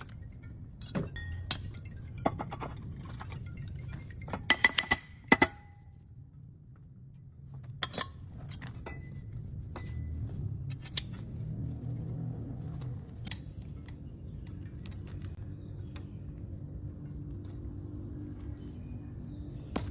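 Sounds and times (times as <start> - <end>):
low steady hum: 0.0 - 19.9.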